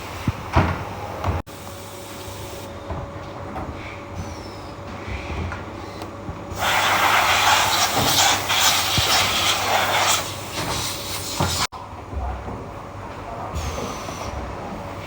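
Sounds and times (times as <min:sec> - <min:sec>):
loud hiss: 0:06.6 - 0:11.7.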